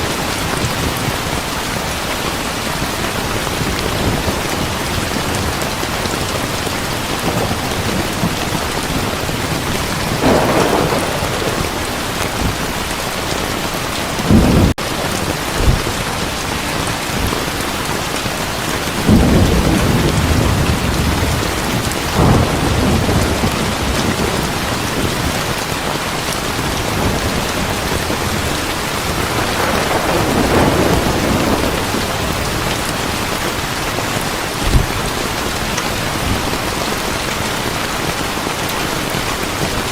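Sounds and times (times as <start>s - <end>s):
thunder rumbling: 0.0s - 37.0s
heavy rain pouring: 0.0s - 39.9s.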